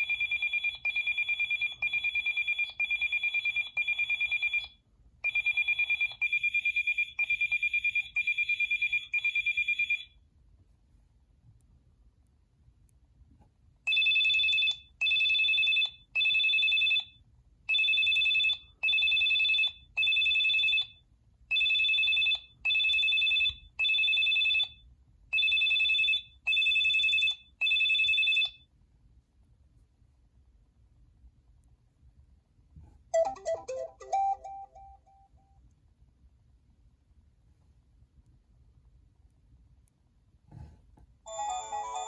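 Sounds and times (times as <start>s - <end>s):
electronic phone ringtone: 0.0s - 10.1s, 33.2s - 35.4s, 41.3s - 42.0s.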